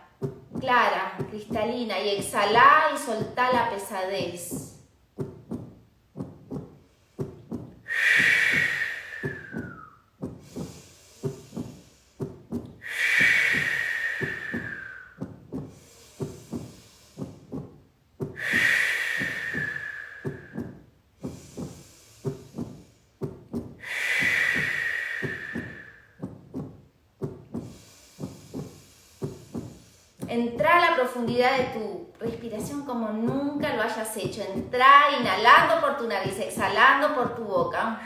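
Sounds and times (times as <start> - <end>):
steady drum beat: 0.0 - 38.0
forceful exhalations: 4.6 - 30.3.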